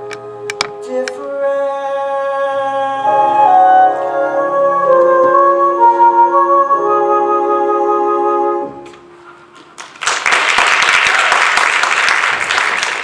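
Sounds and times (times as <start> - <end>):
held closing chord: 2.4 - 9.8
audience applause: 9.6 - 13.0.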